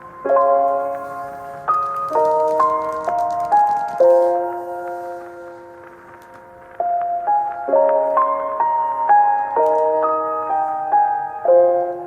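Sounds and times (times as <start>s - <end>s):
lo-fi bell-like keyboard chords: 0.0s - 12.0s.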